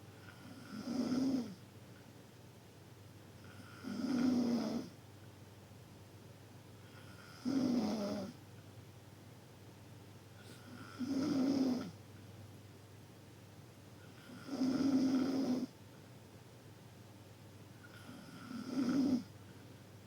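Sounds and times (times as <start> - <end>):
person snoring loudly: 18.0 - 19.3.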